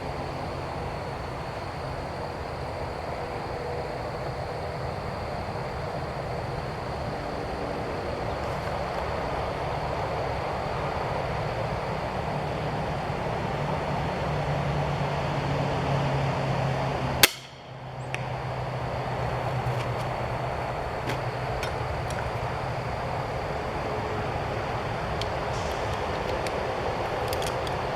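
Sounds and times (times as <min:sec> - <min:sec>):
crossbow firing: 0:17.2 - 0:17.8.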